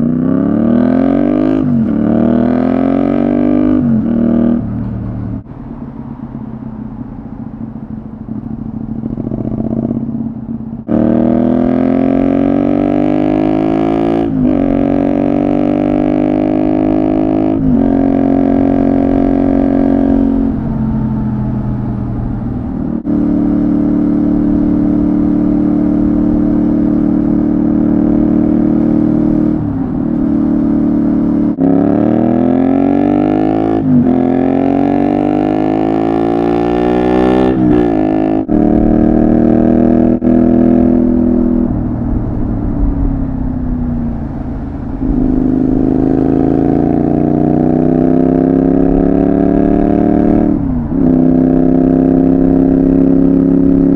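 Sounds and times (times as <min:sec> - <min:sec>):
motorcycle engine accelerating: 0:00.0 - 0:53.9.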